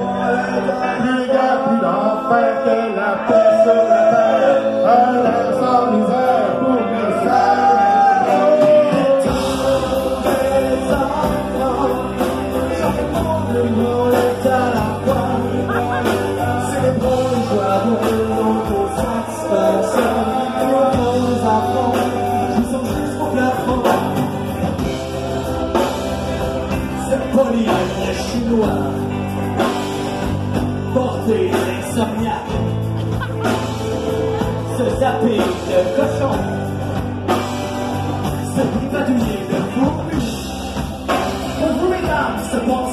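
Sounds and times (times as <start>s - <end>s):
group singing: 0.0s - 30.0s
rock band playing: 0.0s - 42.9s.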